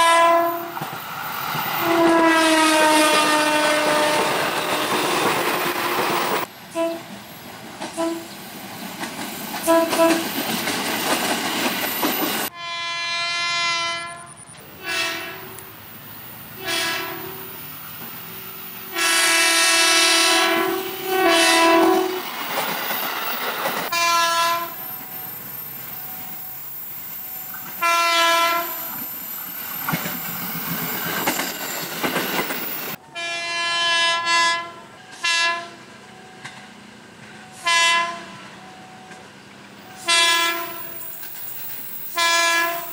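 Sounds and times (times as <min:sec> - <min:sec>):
electric train horn blasts: 0:00.0 - 0:00.8, 0:01.8 - 0:05.2, 0:06.7 - 0:07.2, 0:07.9 - 0:08.4, 0:09.6 - 0:10.3, 0:12.5 - 0:15.7, 0:16.5 - 0:17.6, 0:18.8 - 0:22.3, 0:23.9 - 0:25.2, 0:27.3 - 0:29.1, 0:33.0 - 0:36.5, 0:37.5 - 0:39.2, 0:39.8 - 0:41.2, 0:42.1 - 0:42.9
rumble and clatter of trains: 0:00.0 - 0:12.6, 0:14.1 - 0:42.9.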